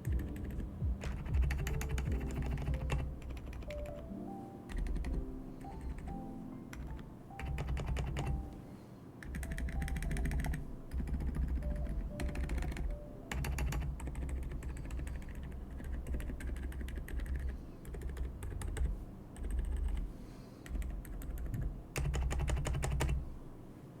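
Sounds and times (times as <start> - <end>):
mechanical keyboard typing: 0.0 - 4.1, 4.7 - 8.6, 9.2 - 20.0, 20.6 - 23.2
background music: 0.0 - 16.5.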